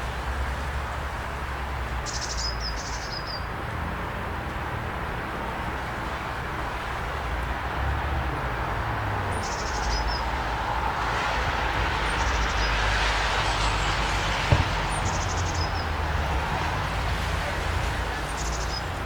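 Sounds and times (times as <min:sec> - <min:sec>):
car passing: 0:07.7 - 0:19.0
sharp thump: 0:14.5 - 0:15.2.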